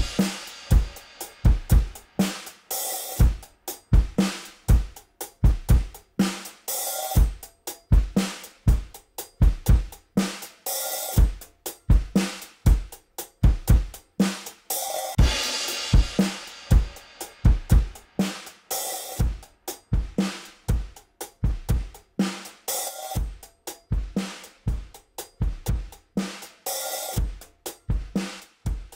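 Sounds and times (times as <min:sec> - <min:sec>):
crash cymbals: 0:00.0 - 0:04.7, 0:14.7 - 0:20.7
drum kit groove: 0:00.0 - 0:28.9.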